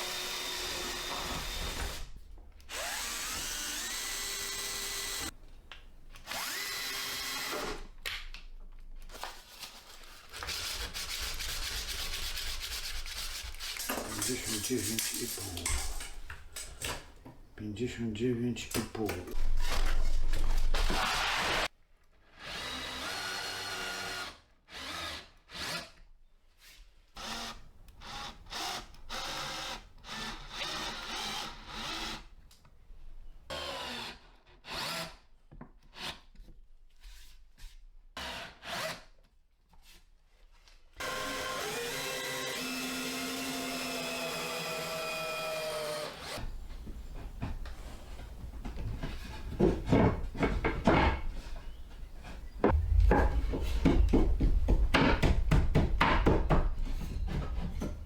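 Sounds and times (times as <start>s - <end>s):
power drill running: 0.0s - 2.1s, 2.7s - 5.3s, 6.2s - 7.8s, 41.0s - 46.6s
low knocks and rumbling: 46.6s - 58.0s.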